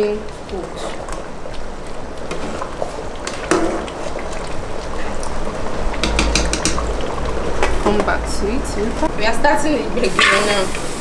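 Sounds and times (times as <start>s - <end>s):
stew bubbling in pot: 0.0s - 11.0s
knocks against pot: 6.0s - 7.2s.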